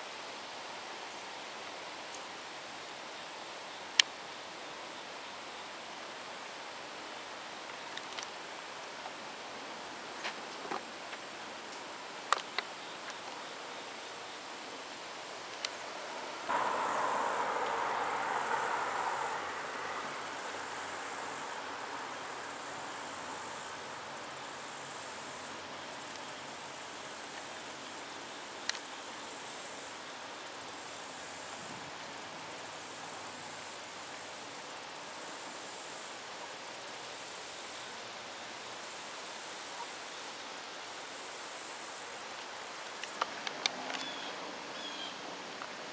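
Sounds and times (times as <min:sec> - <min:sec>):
insects chirping in pulsing chorus: 0:00.0 - 0:45.9
rushing noise: 0:15.2 - 0:25.0.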